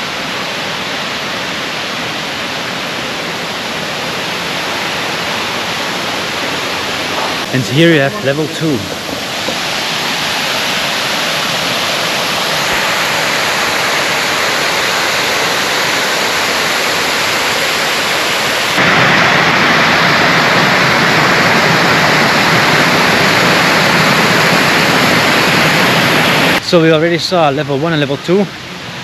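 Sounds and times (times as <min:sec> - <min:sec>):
waterfall rushing water: 0:00.0 - 0:29.0.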